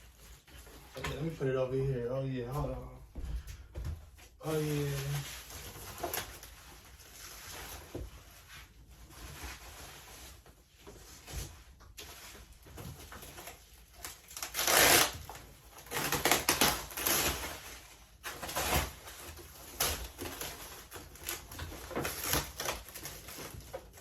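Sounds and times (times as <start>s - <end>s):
packing wrap crinkling and tearing: 4.4s - 7.9s, 11.2s - 24.0s.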